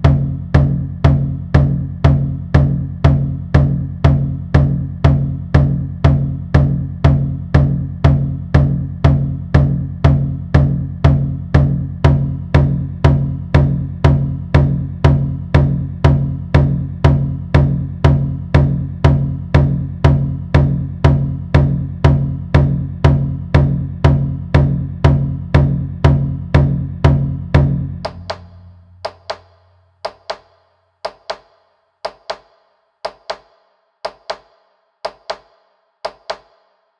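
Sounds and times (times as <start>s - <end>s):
deep drum beating: 0.0s - 29.5s.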